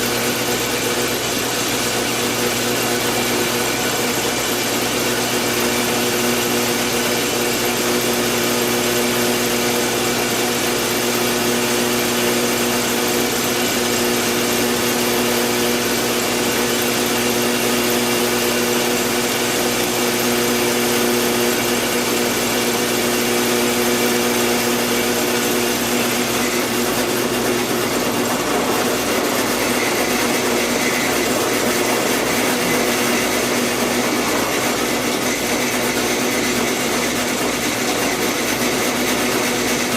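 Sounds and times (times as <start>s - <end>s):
drill press motor hum: 0.0s - 39.9s.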